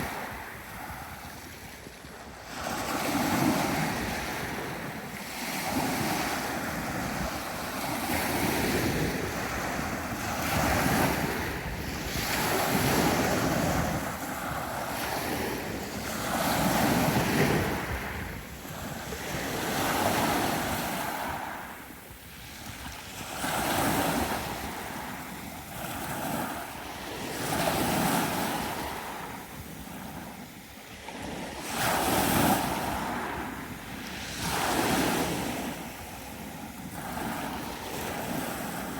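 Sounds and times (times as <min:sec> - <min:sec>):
sea surf washing onto shore: 0:02.4 - 0:25.4.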